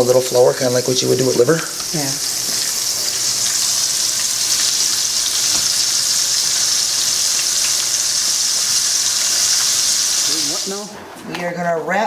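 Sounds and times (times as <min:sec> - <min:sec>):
meat sizzling in a pan: 0:00.2 - 0:10.9.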